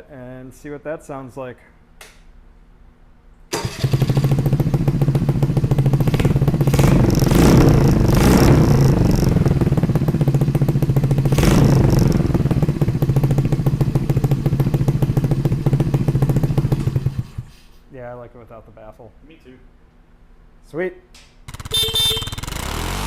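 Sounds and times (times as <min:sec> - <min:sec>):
motorcycle engine starting and revving: 0:03.5 - 0:17.6, 0:21.5 - 0:23.0.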